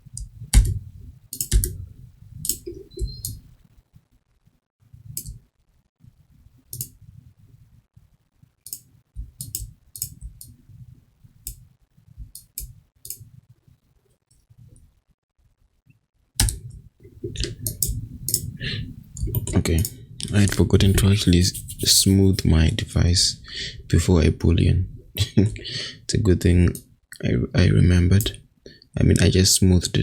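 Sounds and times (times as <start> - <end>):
computer mouse and keyboard clicking: 0.2 - 1.8, 2.4 - 3.4, 8.7 - 10.6, 16.4 - 16.7, 17.3 - 18.6.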